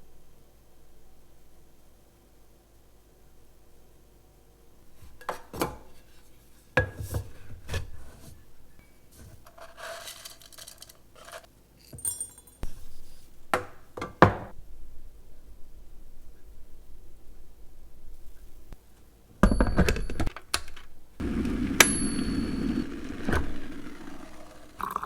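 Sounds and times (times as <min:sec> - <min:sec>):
dishware scraping: 0:21.2 - 0:25.0
glass clink with ringing tone: 0:21.7 - 0:23.3.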